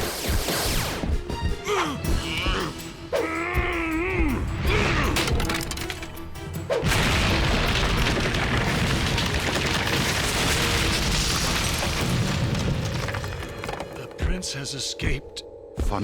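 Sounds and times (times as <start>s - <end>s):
action music: 0.0s - 9.2s.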